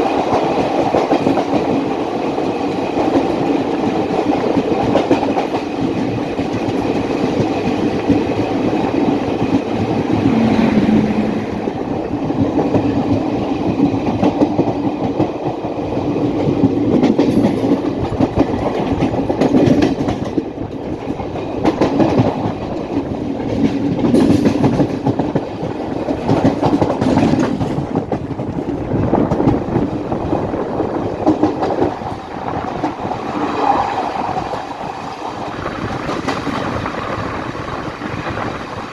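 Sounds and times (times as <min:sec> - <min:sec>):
train wagons rumbling: 0:00.0 - 0:38.9
wheels clacking over rail joints: 0:00.0 - 0:38.9.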